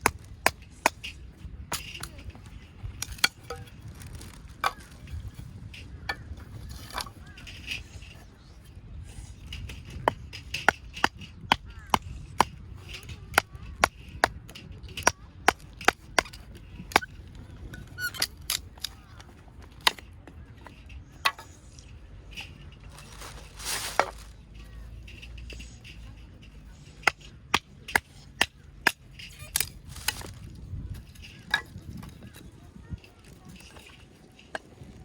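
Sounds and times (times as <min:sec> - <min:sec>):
rustling: 0:00.0 - 0:08.5, 0:17.8 - 0:28.4.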